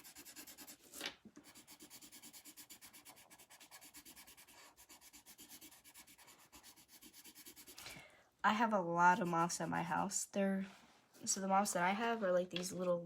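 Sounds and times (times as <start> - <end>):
pencil scrape: 0.0 - 7.8
pencil shading on paper: 0.0 - 7.8.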